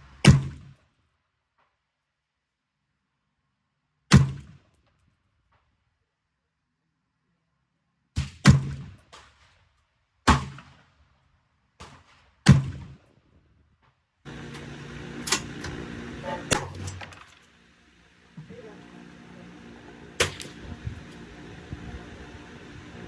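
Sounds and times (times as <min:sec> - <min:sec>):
steady background hum: 0:14.3 - 0:23.0
rifle shots: 0:20.2 - 0:20.6.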